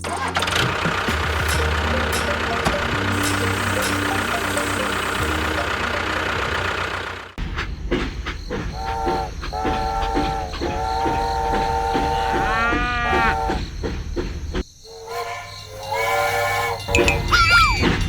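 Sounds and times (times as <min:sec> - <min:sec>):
multi-tone horn blasts: 0:00.0 - 0:06.9, 0:08.8 - 0:13.6, 0:15.1 - 0:17.1
chugging engine rumble: 0:00.0 - 0:14.6, 0:15.6 - 0:18.0.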